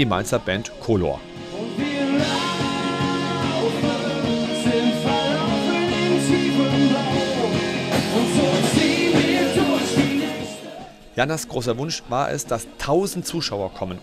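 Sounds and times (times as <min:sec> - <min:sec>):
rock music with singer and guitars: 0:00.0 - 0:11.2.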